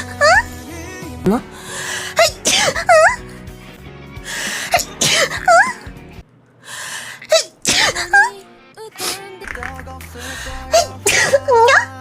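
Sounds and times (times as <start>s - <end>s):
person sneezing: 2.2s - 3.2s, 4.7s - 5.9s, 7.2s - 8.4s, 10.7s - 11.5s.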